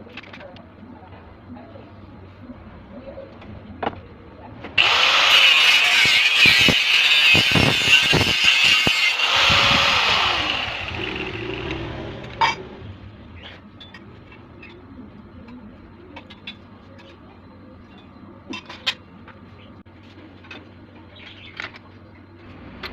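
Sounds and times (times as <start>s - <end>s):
power tool winding down: 4.8s - 12.3s.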